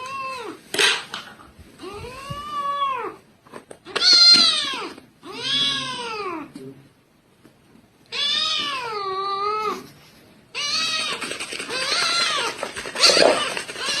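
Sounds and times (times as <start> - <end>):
cat meowing: 1.8 - 3.2, 3.9 - 6.5, 8.1 - 9.9, 10.5 - 14.0.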